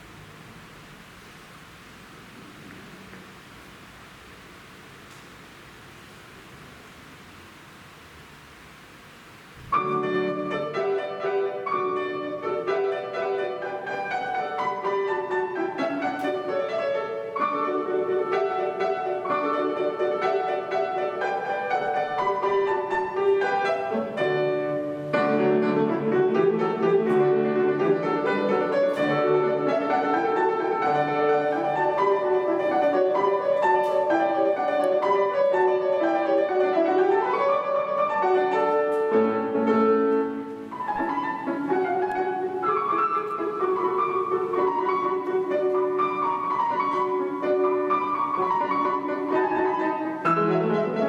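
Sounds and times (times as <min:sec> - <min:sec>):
solo piano classical piece: 0:06.1 - 0:51.0.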